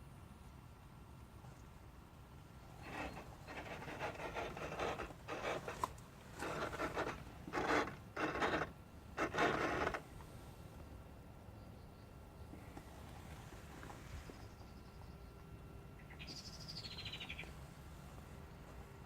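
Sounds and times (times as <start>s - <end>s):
rasping scratching noises: 2.8s - 10.0s.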